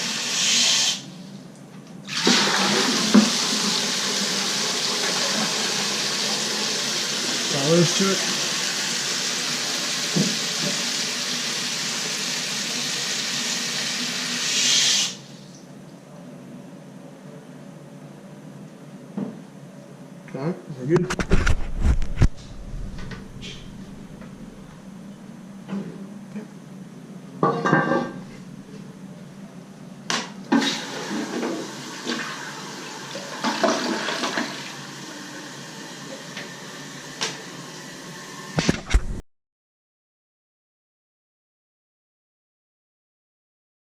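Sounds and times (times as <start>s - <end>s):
toilet tank refilling: 2.1s - 15.5s, 30.5s - 38.6s.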